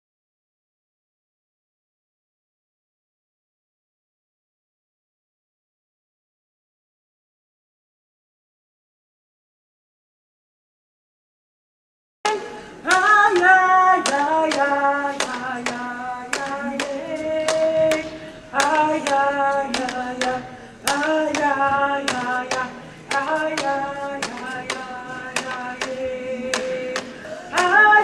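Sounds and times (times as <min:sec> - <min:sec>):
sharp clapping beat: 0:12.9 - 0:27.8.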